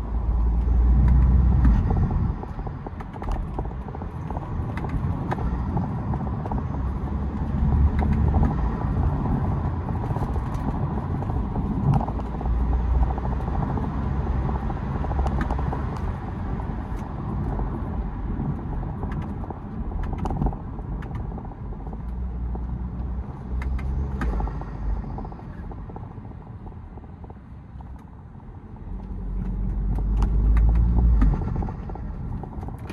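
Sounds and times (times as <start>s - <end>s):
diesel engine rumble: 0.0s - 32.9s.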